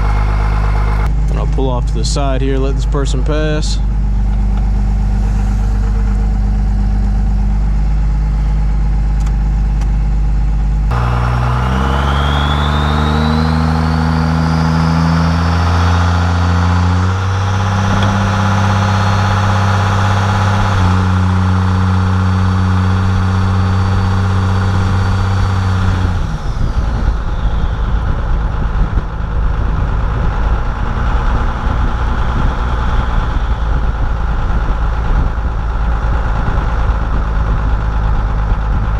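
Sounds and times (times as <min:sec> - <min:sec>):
diesel engine accelerating: 0:00.0 - 0:38.9
turbo whistle: 0:11.1 - 0:15.7, 0:26.4 - 0:28.3.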